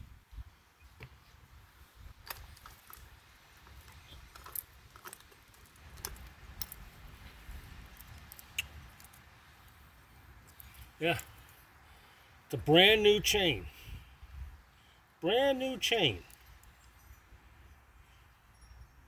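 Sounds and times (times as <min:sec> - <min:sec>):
chainsaw chain links rattling: 0:02.3 - 0:07.1, 0:07.7 - 0:09.8, 0:10.4 - 0:11.7, 0:15.8 - 0:17.3.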